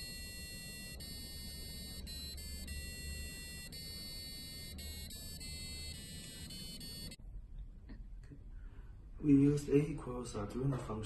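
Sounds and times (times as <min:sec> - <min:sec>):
buzzy electronic beep melody: 0:00.0 - 0:07.2.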